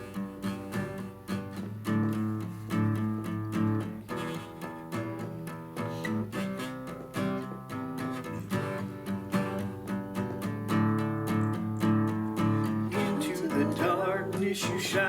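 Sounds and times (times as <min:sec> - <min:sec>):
guitar strumming chords: 0:00.0 - 0:15.0.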